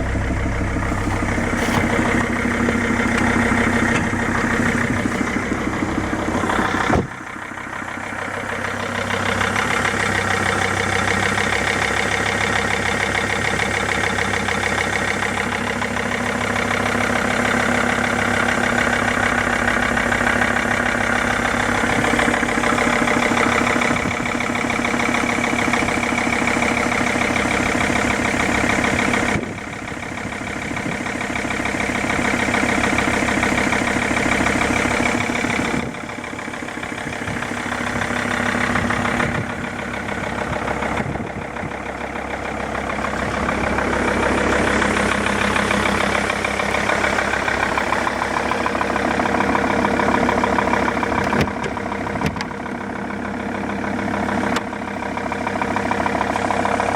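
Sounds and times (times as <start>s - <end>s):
car engine idling with knock: 0.0s - 56.9s.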